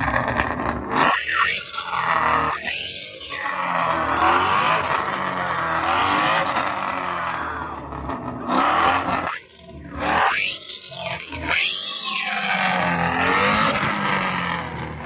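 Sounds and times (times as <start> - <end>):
car engine revving hard: 0.8 - 15.0.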